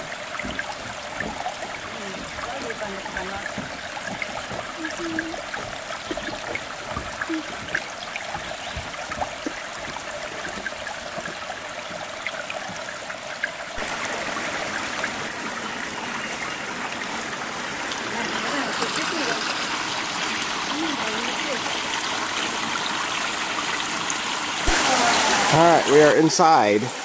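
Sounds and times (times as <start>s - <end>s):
creek running and trickling: 0.0s - 27.0s.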